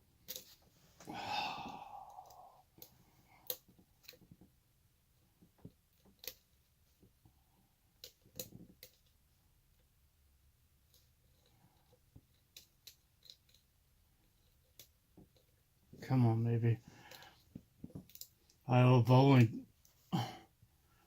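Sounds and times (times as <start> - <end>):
person exhaling: 1.0 - 2.7, 20.1 - 20.5.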